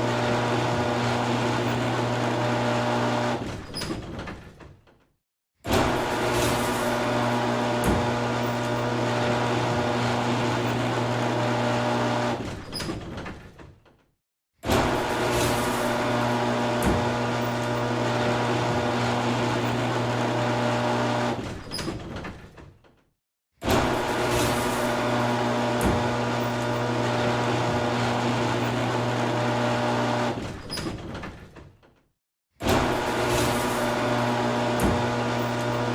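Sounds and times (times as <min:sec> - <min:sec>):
garage door motor hum: 0:00.0 - 0:04.6, 0:05.7 - 0:13.6, 0:14.7 - 0:22.6, 0:23.6 - 0:31.6, 0:32.6 - 0:35.9
garage door rattling: 0:03.4 - 0:05.1, 0:05.7 - 0:14.0, 0:14.7 - 0:23.0, 0:23.6 - 0:29.6, 0:30.3 - 0:32.0, 0:32.6 - 0:35.9
garage door click: 0:12.4 - 0:14.0, 0:30.4 - 0:32.0.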